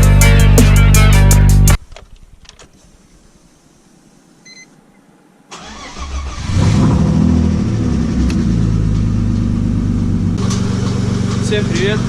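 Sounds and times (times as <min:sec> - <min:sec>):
car engine cranking and starting: 0:05.5 - 0:12.0.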